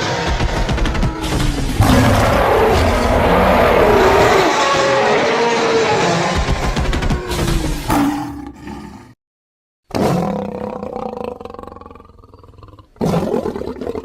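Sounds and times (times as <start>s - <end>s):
creature roaring: 1.8s - 9.2s.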